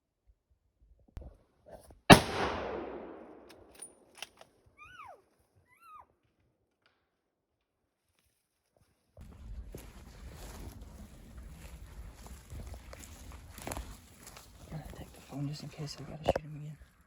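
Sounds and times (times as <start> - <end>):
rifle shot echoing: 2.1 - 3.7.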